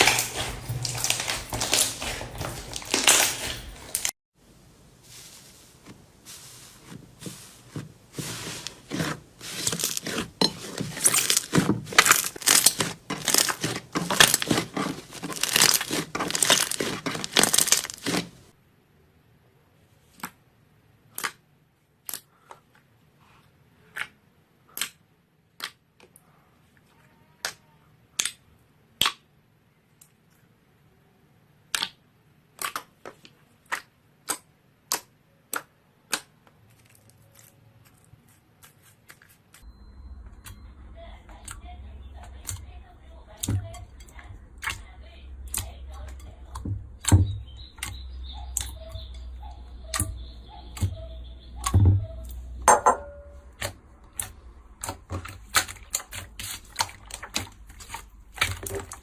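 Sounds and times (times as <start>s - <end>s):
slime crackling and crunching: 0.0s - 4.1s, 5.1s - 18.5s, 36.1s - 39.6s, 53.6s - 59.0s.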